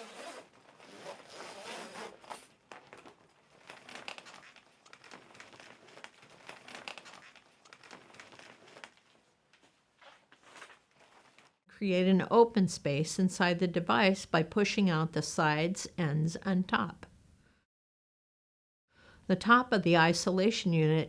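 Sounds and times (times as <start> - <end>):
zipper unzipping: 0.0 - 4.5
plastic rustling and crinkling: 0.0 - 11.7.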